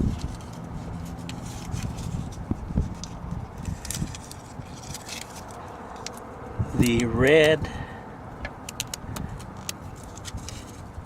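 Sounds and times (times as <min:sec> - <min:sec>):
connectors clicking and tapping: 0:08.4 - 0:10.7.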